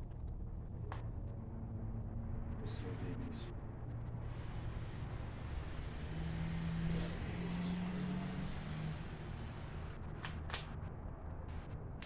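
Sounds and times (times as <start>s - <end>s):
pistol parts clicking: 9.9s - 10.8s.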